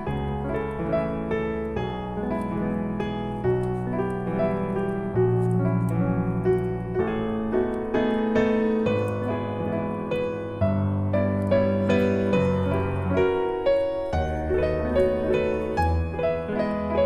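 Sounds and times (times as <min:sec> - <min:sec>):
piano melody with chords: 0:00.0 - 0:17.0.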